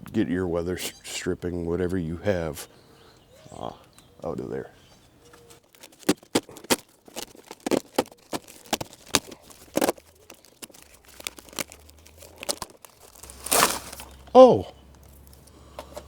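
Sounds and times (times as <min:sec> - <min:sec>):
plastic bag crinkling: 0:05.4 - 0:14.2
plastic bag tearing rustle: 0:05.5 - 0:14.2.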